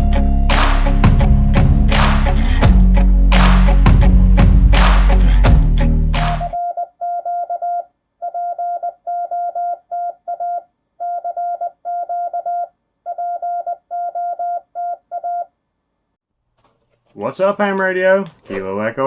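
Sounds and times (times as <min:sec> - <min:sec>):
morse code beeps: 0:06.6 - 0:15.5.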